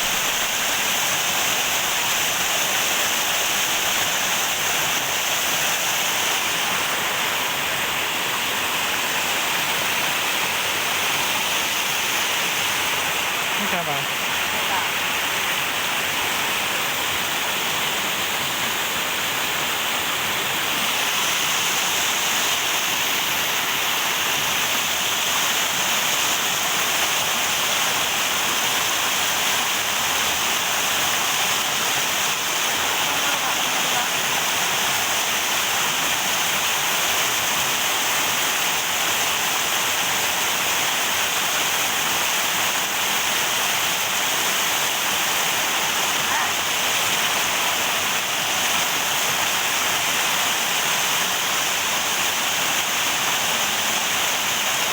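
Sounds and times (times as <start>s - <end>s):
river water rushing: 0.0s - 54.9s.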